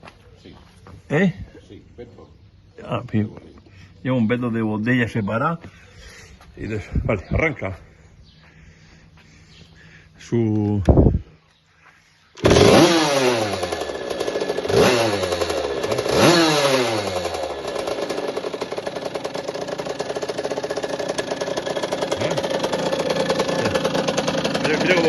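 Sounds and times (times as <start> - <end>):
two-stroke motorcycle engine revving: 12.4 - 25.0.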